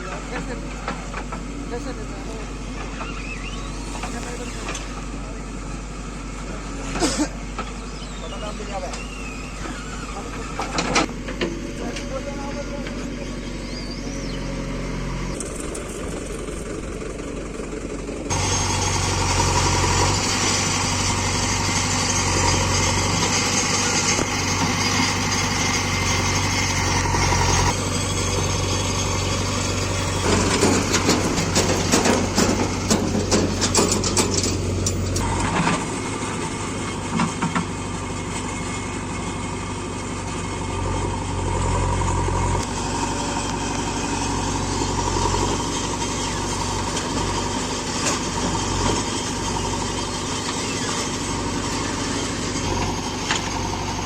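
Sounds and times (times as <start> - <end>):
diesel engine running: 0.0 - 54.0
rapid clattering knocks: 30.2 - 35.1.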